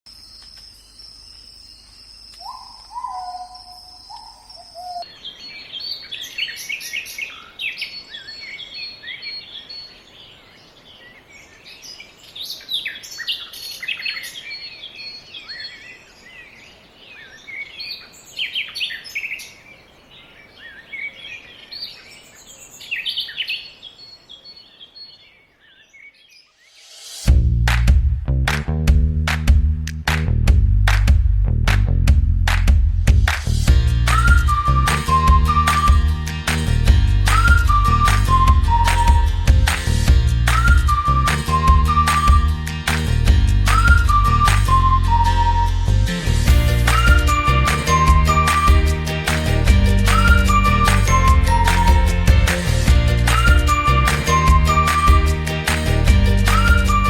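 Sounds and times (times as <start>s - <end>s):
insect drone: 0.1s - 5.0s
whistled bird notes: 0.1s - 9.9s, 34.1s - 36.3s, 37.3s - 39.5s, 40.5s - 42.6s, 43.7s - 46.0s, 46.8s - 49.0s, 50.0s - 52.3s, 53.3s - 55.5s, 56.4s - 57.0s
birds chirping and calling: 0.3s - 26.6s.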